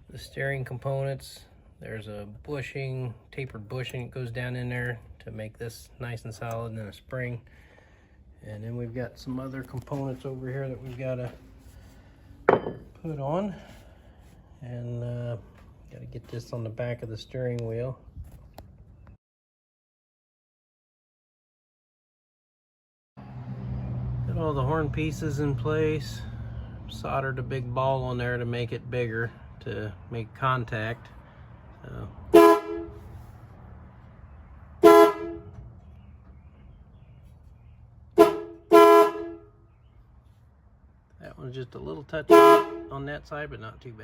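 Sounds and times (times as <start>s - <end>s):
car horn honking: 32.3s - 33.2s, 34.8s - 35.6s, 38.2s - 39.6s, 42.2s - 43.1s.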